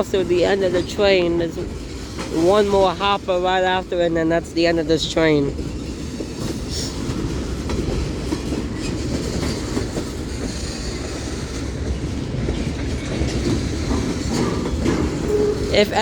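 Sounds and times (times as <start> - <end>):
low rumble of wheels on rail: 0.0 - 16.0
clicking over rail joints: 5.5 - 15.8.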